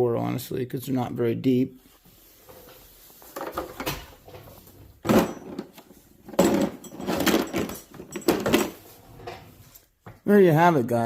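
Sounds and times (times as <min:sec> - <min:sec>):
metal tools clattering in drawer: 0:03.3 - 0:09.6.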